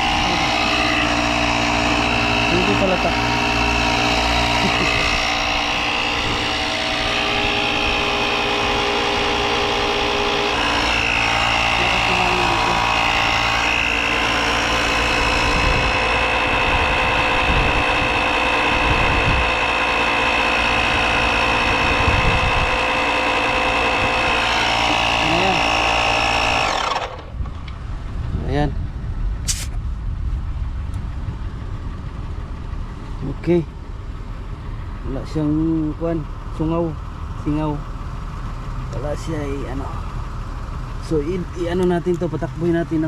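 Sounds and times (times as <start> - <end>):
electric tire compressor running: 0.0 - 29.8.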